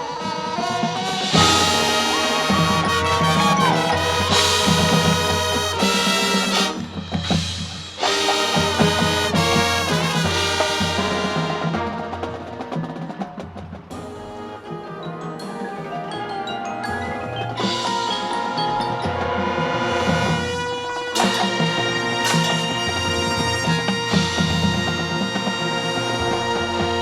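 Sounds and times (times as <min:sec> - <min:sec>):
brass band playing: 0:00.0 - 0:27.0
drums: 0:00.0 - 0:27.0.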